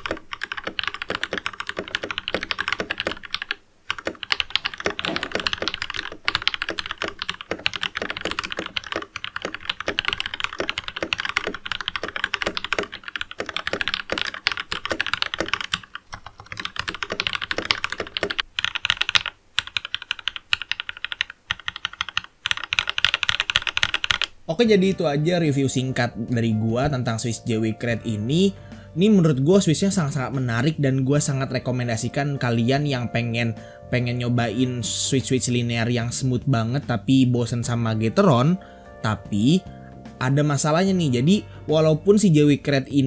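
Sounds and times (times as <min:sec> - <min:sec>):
mechanical keyboard typing: 0:00.0 - 0:24.3.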